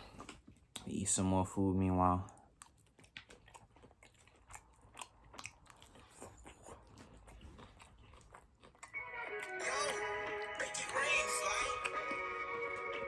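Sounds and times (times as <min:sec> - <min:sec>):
person chewing and biting: 0:00.0 - 0:01.0, 0:02.4 - 0:13.0
music with a beat: 0:09.1 - 0:13.0.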